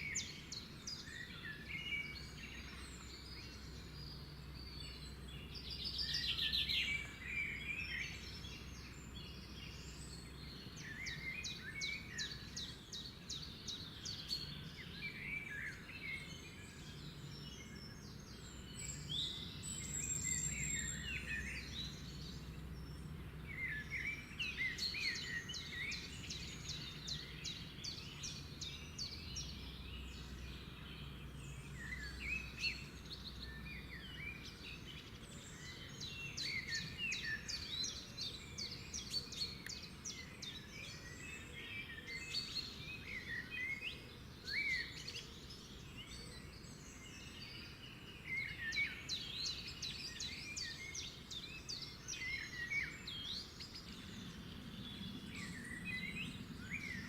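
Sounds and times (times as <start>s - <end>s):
songbird singing: 0.0s - 57.0s
low steady background rumble: 16.2s - 36.1s.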